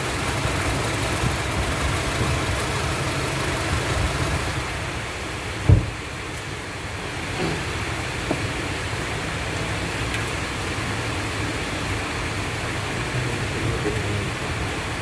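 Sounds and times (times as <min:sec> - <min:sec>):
misfiring car engine idling: 0:00.0 - 0:06.0
thump: 0:05.6 - 0:06.0.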